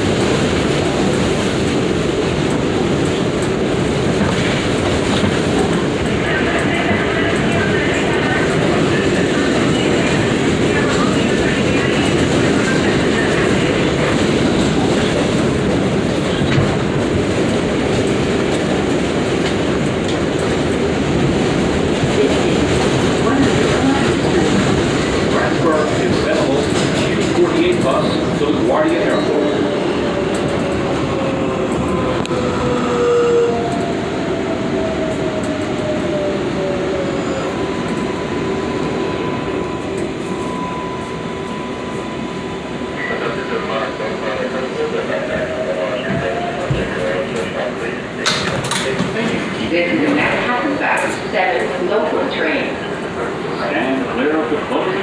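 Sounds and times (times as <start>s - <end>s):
train wheels rumbling on track: 0.0s - 55.0s
wheels clacking over rail joints: 48.2s - 49.5s.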